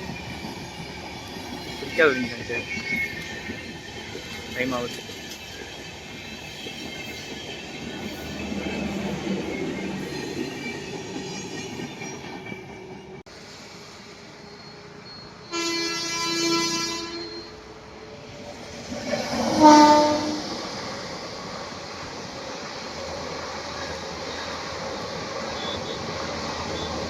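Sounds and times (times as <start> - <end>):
train rail noise: 0.0 - 27.0
train air horn: 15.5 - 17.6, 19.4 - 20.5.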